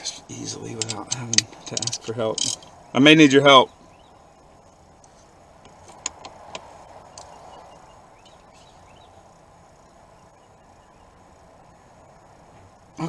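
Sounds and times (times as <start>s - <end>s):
torque wrench clicking: 0.8s - 2.7s.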